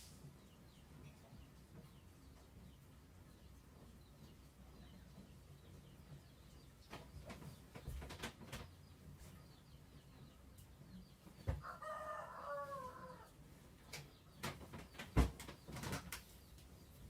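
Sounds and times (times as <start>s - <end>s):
rooster crowing: 11.6s - 13.3s.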